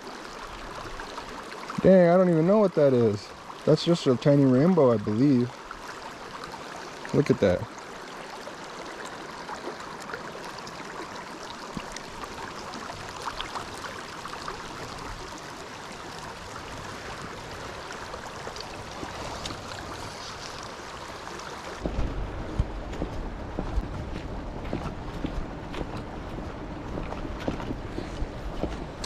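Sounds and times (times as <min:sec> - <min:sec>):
creek babbling over rocks: 0:00.0 - 0:21.9
low microphone rumble: 0:21.8 - 0:29.0.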